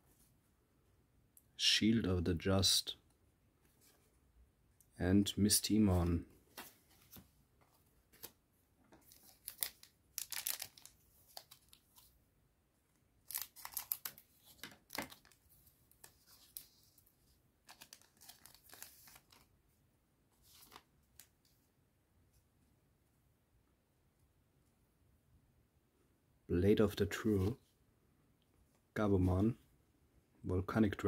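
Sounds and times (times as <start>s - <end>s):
wrapper tearing and crinkling: 9.1s - 11.8s, 13.2s - 15.4s, 17.7s - 19.4s.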